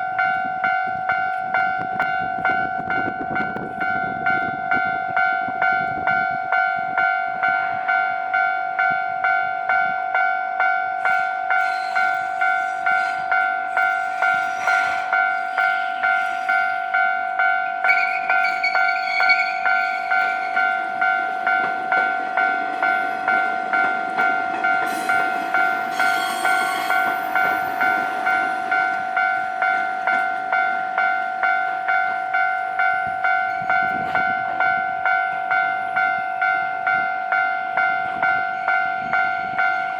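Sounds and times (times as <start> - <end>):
level crossing warning bell: 0.0 - 39.9
train passing: 0.0 - 39.9
high wheel squeal: 11.0 - 20.8, 24.9 - 28.5.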